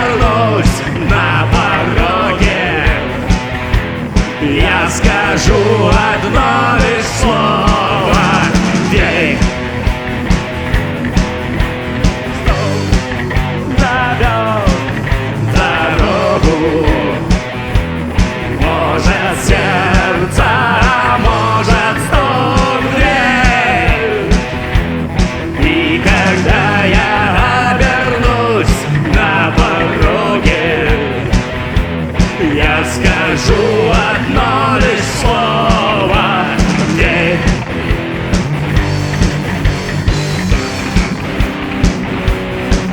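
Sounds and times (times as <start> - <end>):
man singing: 0.0 - 3.4, 4.3 - 9.7, 12.4 - 17.5, 18.5 - 24.5, 25.5 - 31.4, 32.3 - 37.8
drum beat: 0.0 - 42.9
guitars: 0.0 - 42.9.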